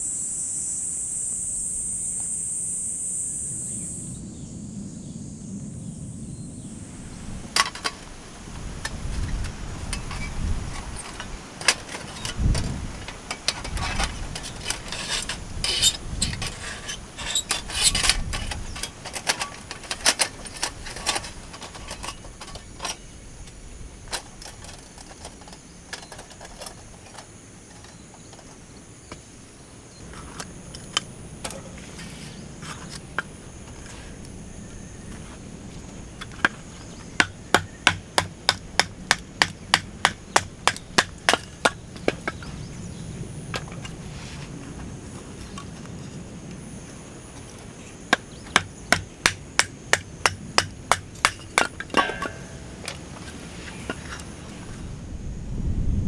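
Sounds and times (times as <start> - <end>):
high insect drone: 0.0 - 56.0
wind rumble on microphone: 3.8 - 25.4, 51.6 - 56.0
camp gear clattering: 7.1 - 54.9.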